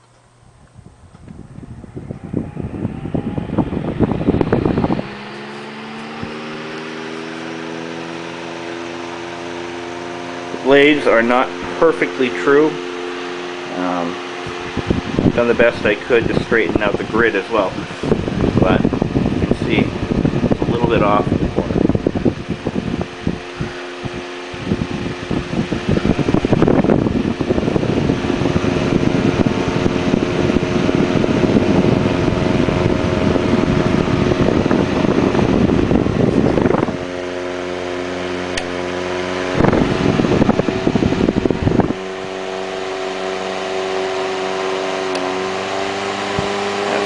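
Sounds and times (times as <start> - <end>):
electric fan motor humming: 0.0 - 47.0
fan air rushing: 0.0 - 47.0.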